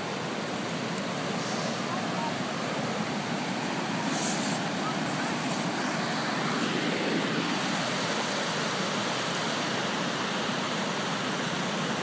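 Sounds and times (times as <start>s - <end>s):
floodwater rushing: 0.0s - 12.0s.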